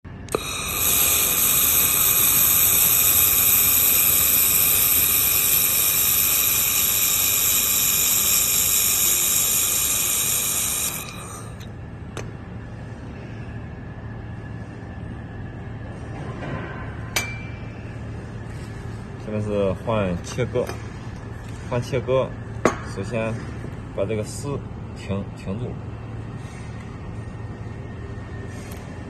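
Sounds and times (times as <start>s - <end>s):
low machine hum: 0.0s - 29.0s
laser welder hissing and ringing: 0.1s - 11.8s.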